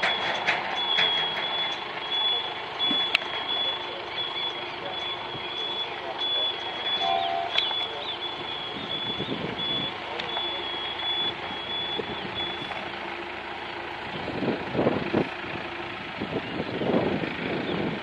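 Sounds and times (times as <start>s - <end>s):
truck reversing alarm beeping: 0.0s - 14.3s
vehicles outdoors: 0.0s - 18.0s.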